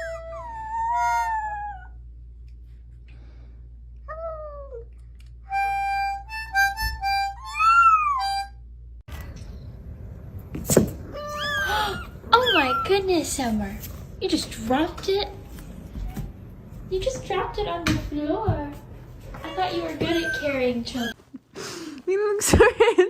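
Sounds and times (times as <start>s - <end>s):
harmonica playing held notes: 5.5s - 8.5s
cat meowing: 11.1s - 13.1s.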